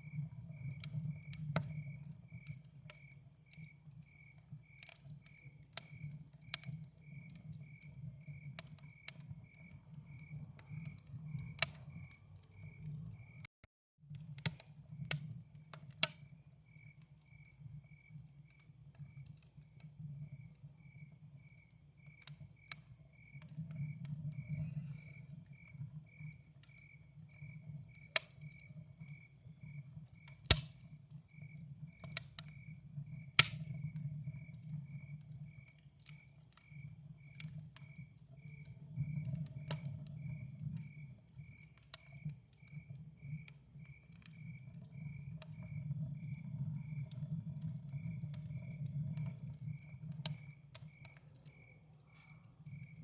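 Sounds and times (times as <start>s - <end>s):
burning wood popping: 0.0s - 13.4s, 14.1s - 53.0s
campfire crackling: 0.0s - 13.4s, 14.1s - 53.0s
crickets chirping: 0.0s - 13.5s, 16.2s - 19.4s, 20.0s - 53.0s.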